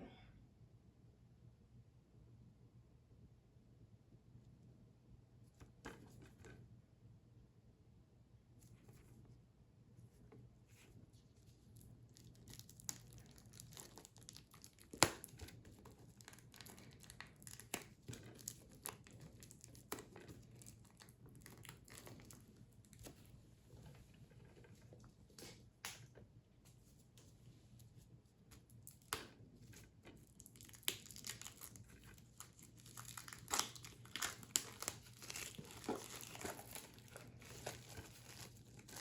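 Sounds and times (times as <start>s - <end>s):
plastic shrink-wrap tearing: 12.1s - 22.4s, 30.2s - 39.0s
plastic wrap snapping: 12.2s - 22.4s, 30.3s - 39.0s.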